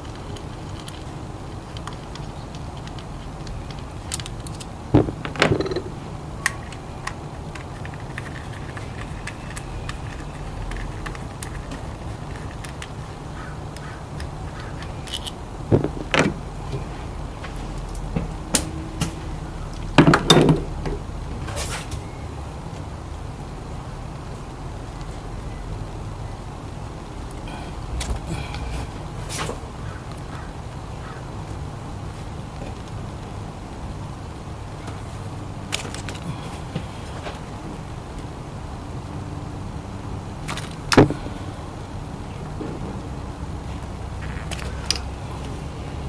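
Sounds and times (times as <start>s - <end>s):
steady low hum: 0.0s - 46.0s.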